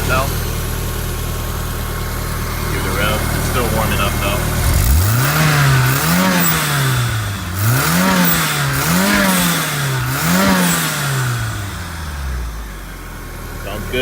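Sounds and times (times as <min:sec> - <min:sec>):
car engine revving: 0:00.0 - 0:14.0.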